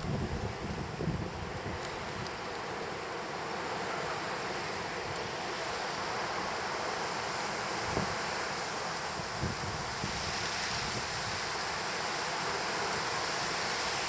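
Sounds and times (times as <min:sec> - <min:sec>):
wind buffeting microphone: 0:00.0 - 0:02.4, 0:09.1 - 0:11.6.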